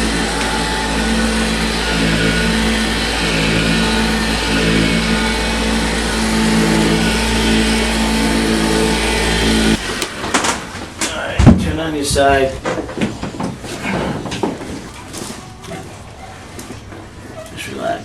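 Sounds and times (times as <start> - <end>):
electric massager motor buzz: 0.0 - 10.9.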